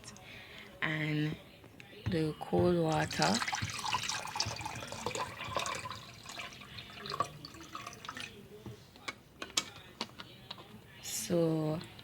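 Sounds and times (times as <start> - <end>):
water dripping and trickling: 2.9 - 8.4.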